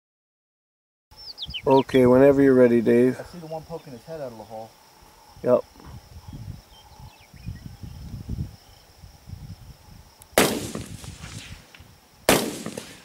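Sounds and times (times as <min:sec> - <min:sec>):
rifle shots: 0:10.4 - 0:13.0.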